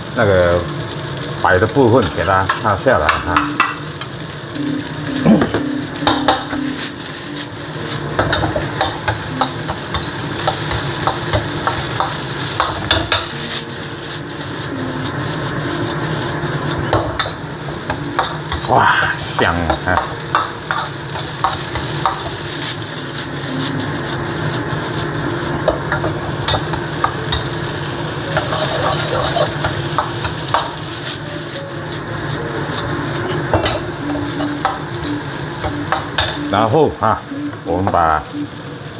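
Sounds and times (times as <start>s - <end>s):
oil sizzling in a pan: 0.0s - 38.9s
spatula scraping a pan: 28.4s - 31.2s.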